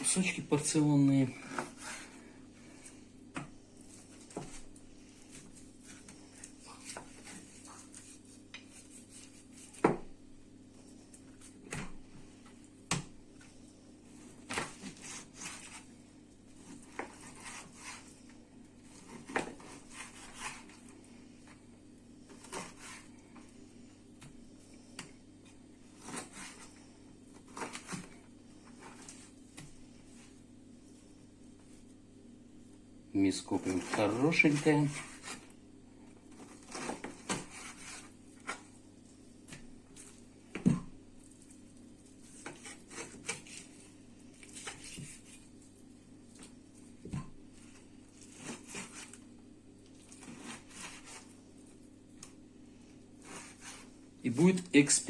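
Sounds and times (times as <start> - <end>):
knife cutting raw meat: 42.1 - 45.6.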